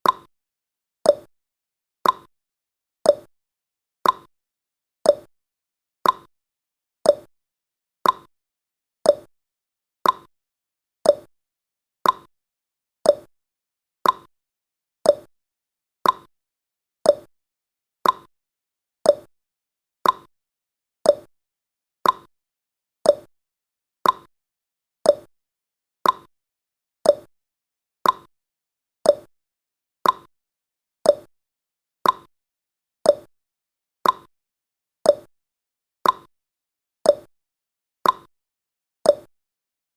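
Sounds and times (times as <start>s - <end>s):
clock ticking: 2.0s - 2.3s, 4.0s - 4.3s, 6.0s - 6.3s, 8.0s - 8.3s, 10.0s - 10.3s, 12.0s - 12.3s, 14.0s - 14.3s, 15.1s - 15.3s, 16.0s - 16.3s, 18.0s - 18.3s, 20.0s - 20.3s, 22.0s - 22.3s, 24.0s - 24.3s, 25.1s - 25.3s, 26.0s - 26.3s, 27.1s - 27.3s, 28.0s - 28.3s, 29.1s - 29.3s, 30.0s - 30.3s, 32.0s - 32.3s, 33.1s - 33.3s, 34.0s - 34.3s, 36.0s - 36.3s, 38.0s - 38.3s, 39.1s - 39.3s.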